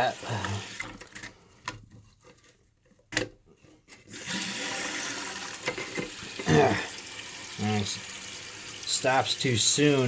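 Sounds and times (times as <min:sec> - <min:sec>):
toilet cistern refilling: 0:04.1 - 0:10.0.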